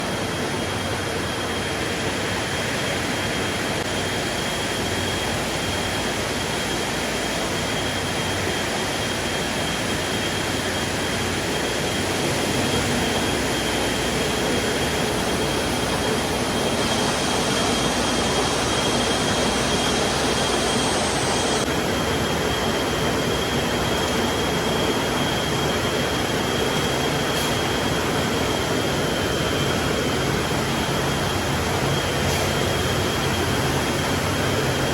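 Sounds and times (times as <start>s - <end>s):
constant high whine: 0.0s - 34.9s.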